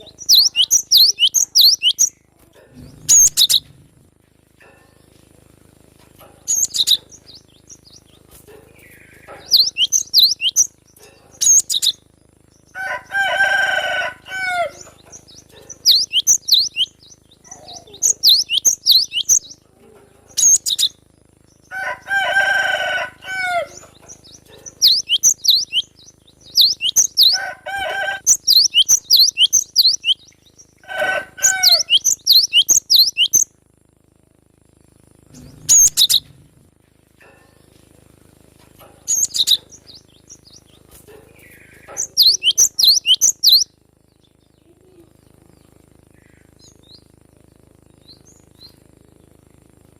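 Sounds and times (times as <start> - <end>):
harsh low bird calls: 0.0 - 4.0, 6.4 - 13.4, 14.0 - 19.6, 23.1 - 33.5, 35.3 - 36.6, 39.1 - 47.0
bird chirping high sharp notes: 0.1 - 2.2, 8.8 - 10.7, 15.2 - 19.6, 24.1 - 27.4, 28.2 - 30.4, 31.4 - 33.4, 41.9 - 43.7.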